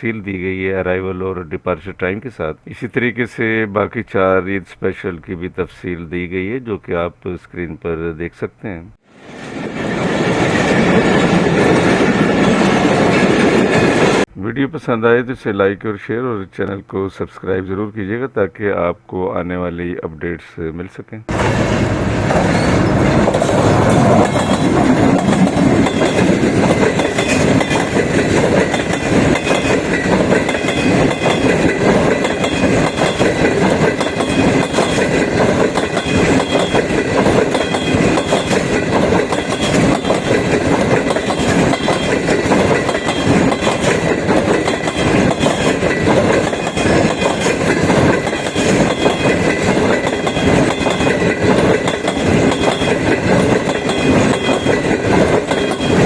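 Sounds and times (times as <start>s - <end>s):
train rumbling on rails: 9.0s - 14.3s, 21.3s - 56.0s
wheels clickety-clack: 9.2s - 14.3s, 21.3s - 56.0s.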